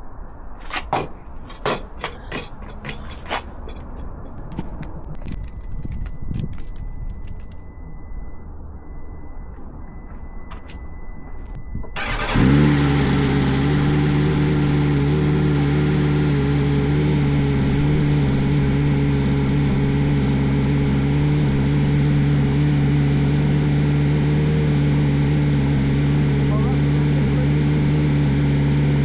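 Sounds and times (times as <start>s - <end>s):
motorcycle engine idling: 12.0s - 19.6s.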